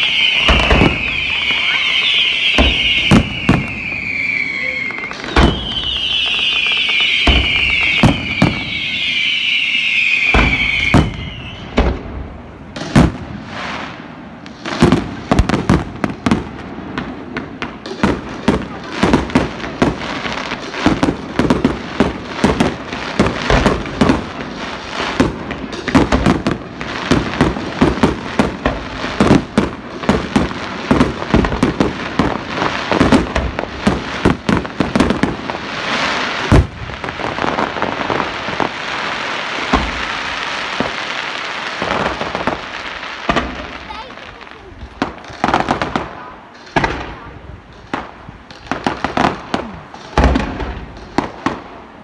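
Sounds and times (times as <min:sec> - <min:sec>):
crackling hiss: 0:00.0 - 0:52.0
fireworks bangs and pops: 0:00.0 - 0:52.0.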